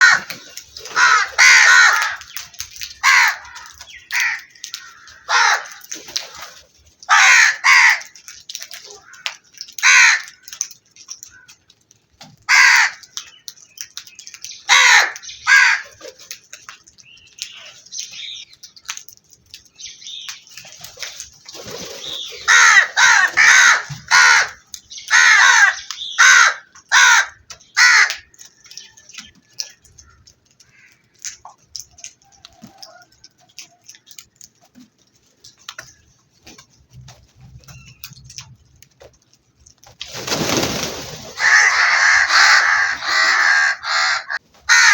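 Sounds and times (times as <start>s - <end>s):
crows cawing: 0.0s - 6.0s, 7.1s - 11.6s, 12.5s - 13.2s, 14.7s - 16.0s, 22.1s - 28.4s, 29.6s - 31.2s, 41.2s - 44.9s.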